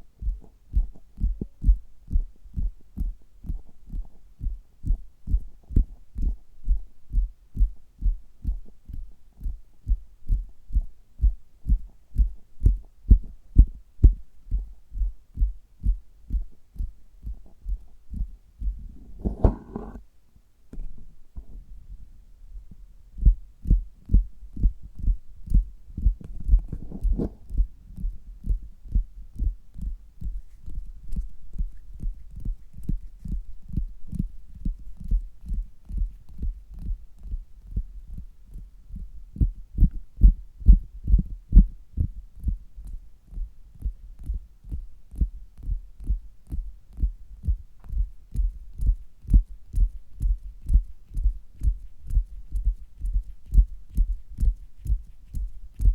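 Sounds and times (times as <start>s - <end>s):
fingers tapping on stomach: 38.5s - 55.9s.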